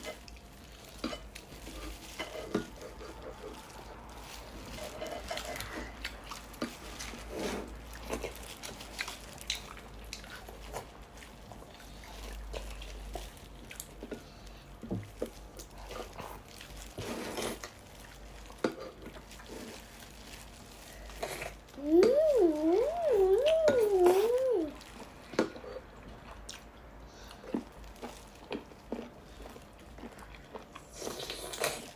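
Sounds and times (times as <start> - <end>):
chewing: 0.0 - 31.9
slurping: 21.2 - 24.8.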